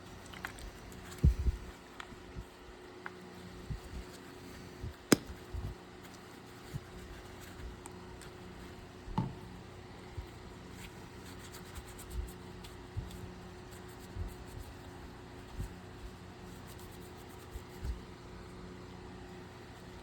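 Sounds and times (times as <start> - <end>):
sharp click: 5.1 - 5.4.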